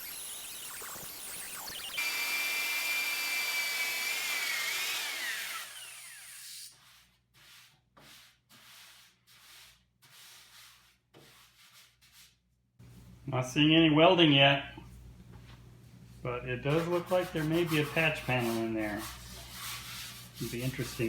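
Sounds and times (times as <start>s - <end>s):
electric power tool whine: 0.0s - 6.7s
hand sanding strokes: 2.0s - 12.4s, 16.5s - 21.0s.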